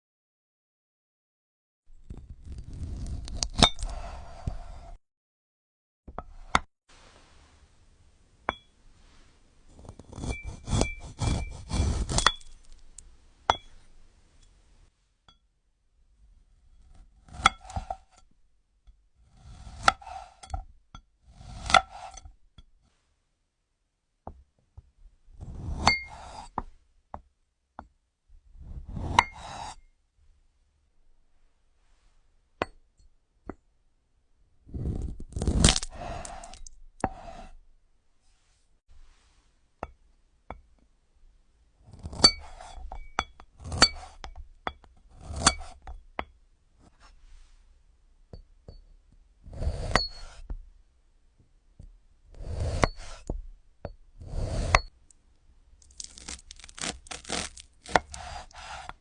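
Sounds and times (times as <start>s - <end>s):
clinks on small hard objects: 55.8s - 58.0s
rustling: 55.8s - 58.2s.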